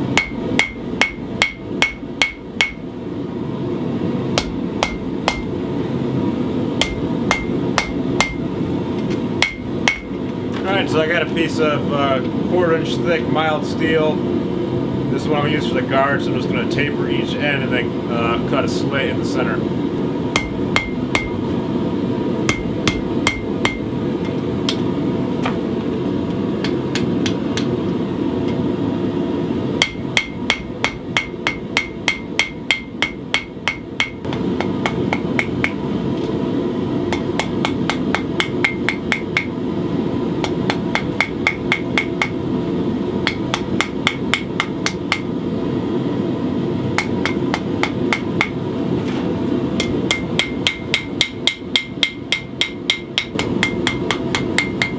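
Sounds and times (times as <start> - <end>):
hammer ringing on anvil: 0.2 - 2.8, 4.4 - 5.5, 6.8 - 8.5, 9.4 - 10.2, 20.4 - 21.4, 22.5 - 23.9, 29.8 - 35.8, 37.1 - 39.5, 40.4 - 42.4, 49.8 - 54.9.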